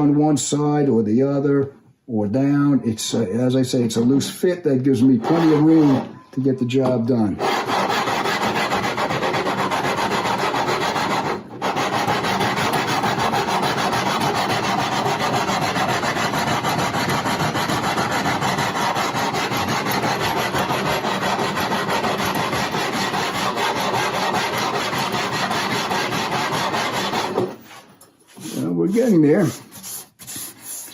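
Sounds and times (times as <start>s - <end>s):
sandpaper rasping on wood: 5.1s - 6.1s, 7.4s - 30.9s.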